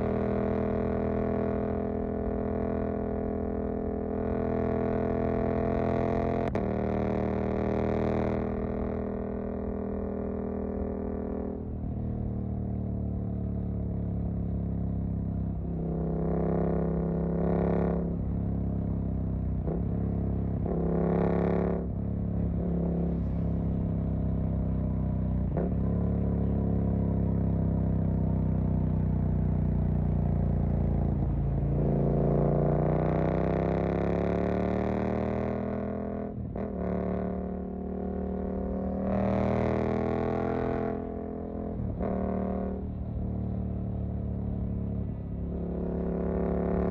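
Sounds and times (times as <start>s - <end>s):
motorcycle engine accelerating: 0.0s - 46.9s.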